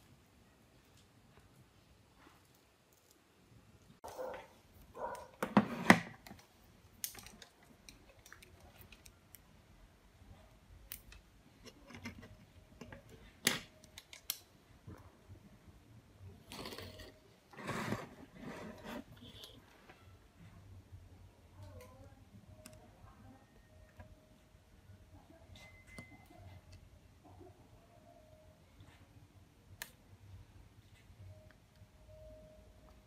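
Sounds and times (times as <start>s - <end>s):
tools clicking and scraping on phone: 11.0s - 14.4s, 16.4s - 19.6s.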